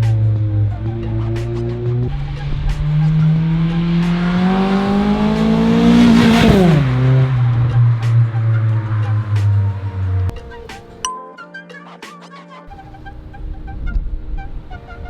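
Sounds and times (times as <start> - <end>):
car accelerating past: 0.0 - 10.7.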